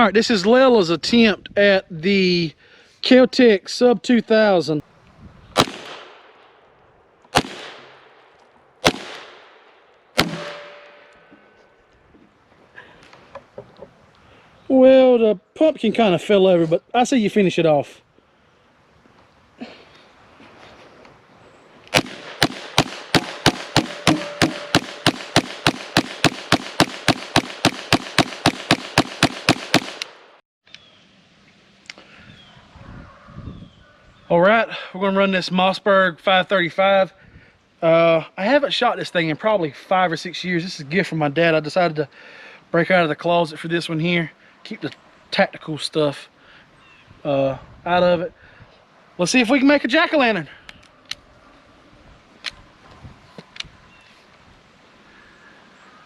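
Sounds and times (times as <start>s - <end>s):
gunshots with long echo: 5.6s - 6.7s, 7.3s - 11.2s, 21.9s - 30.4s.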